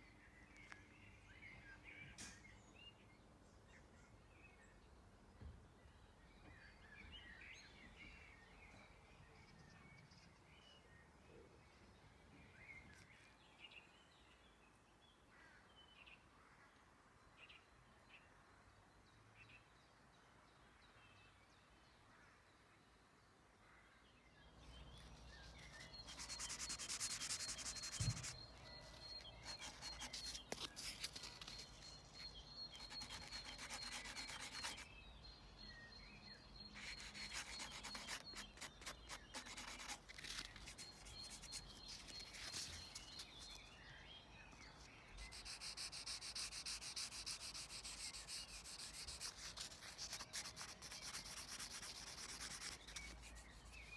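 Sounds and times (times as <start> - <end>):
faint chirps: 24.8 - 53.9
sanding on paintwork: 25.5 - 34.9, 36.8 - 43.6, 45.2 - 53.9.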